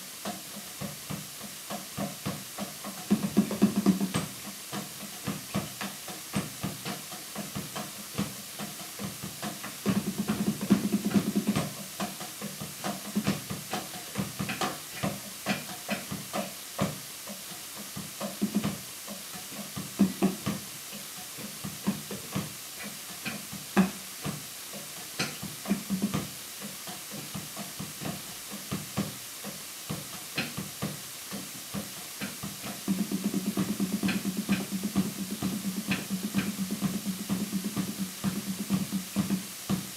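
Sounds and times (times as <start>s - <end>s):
steady hiss: 0.0s - 39.9s
drum kit hits: 29.9s - 39.9s.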